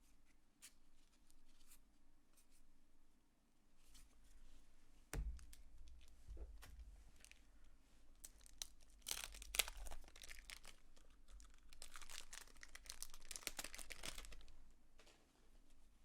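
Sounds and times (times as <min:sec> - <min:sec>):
wrapper crinkling and tearing: 0:08.2 - 0:14.5.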